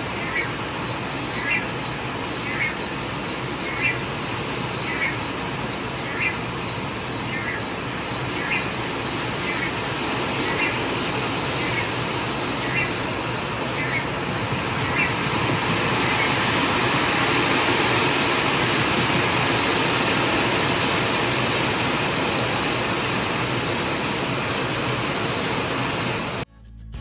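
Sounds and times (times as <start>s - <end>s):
faint high bird chirps: 0.0s - 22.3s
steady outdoor hiss: 0.0s - 26.5s.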